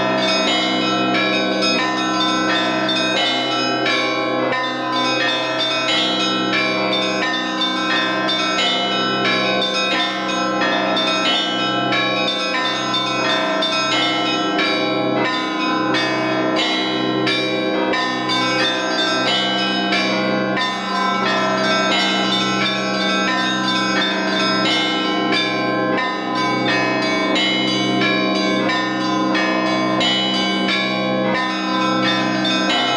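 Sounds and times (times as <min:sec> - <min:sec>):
small church bells chiming rapidly: 0:00.0 - 0:32.9.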